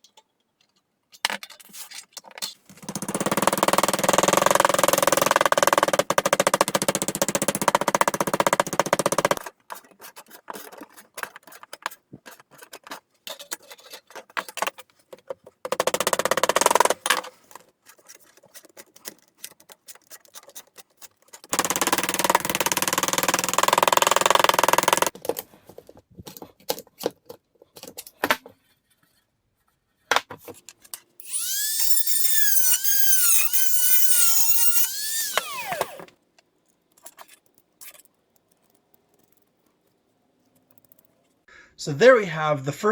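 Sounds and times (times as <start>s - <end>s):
clicks and scraping: 7.7s - 15.6s, 30.4s - 41.4s
tool motor whining: 21.6s - 25.1s, 31.2s - 36.1s
power tool cutting sheet metal: 31.2s - 36.1s.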